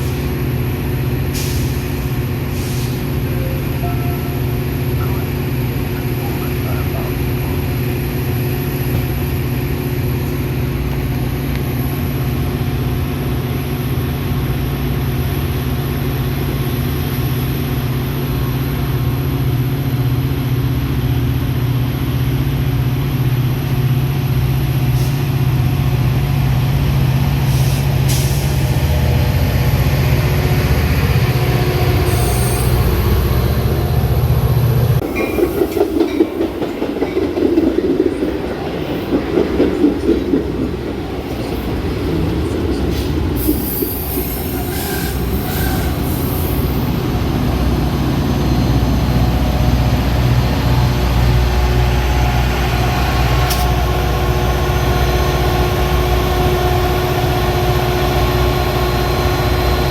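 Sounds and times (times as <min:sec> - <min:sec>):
diesel locomotive humming: 0:00.0 - 0:59.9
rail cars clattering: 0:00.0 - 0:59.9.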